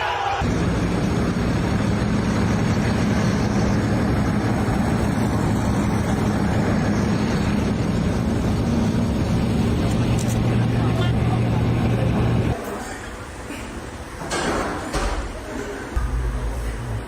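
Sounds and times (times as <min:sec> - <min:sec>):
steady rushing noise: 0:00.1 - 0:12.6
engine humming: 0:00.4 - 0:12.6, 0:15.6 - 0:17.0.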